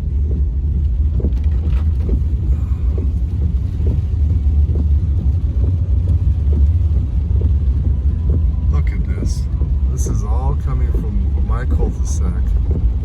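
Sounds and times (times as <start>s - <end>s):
car rumble from inside cabin: 0.0s - 13.0s.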